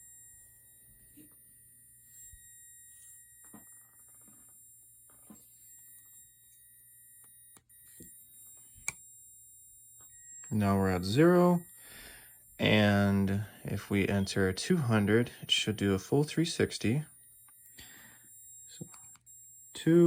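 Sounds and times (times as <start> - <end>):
high-pitched electronic whine: 0.0 - 20.0.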